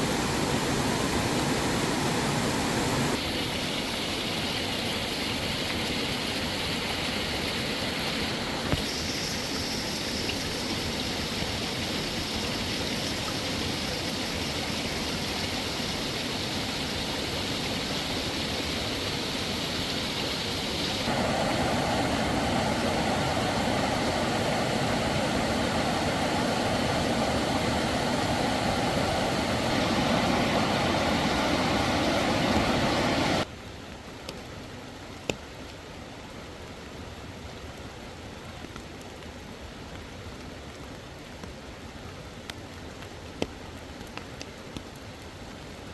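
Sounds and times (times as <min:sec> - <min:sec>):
stream water rushing: 0:00.0 - 0:33.5.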